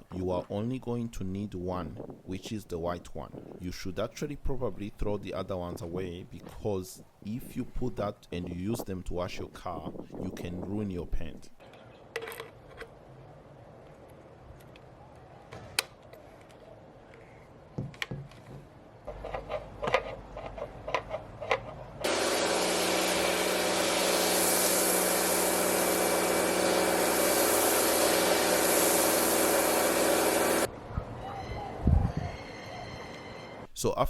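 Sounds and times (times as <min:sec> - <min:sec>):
pressure washer motor hum: 0:22.0 - 0:30.7
pressure washer spray hiss: 0:22.0 - 0:30.7.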